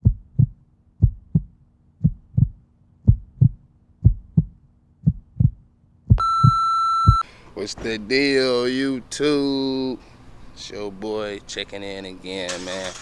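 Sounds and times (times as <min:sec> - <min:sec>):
heartbeat thumps: 0:00.0 - 0:07.2.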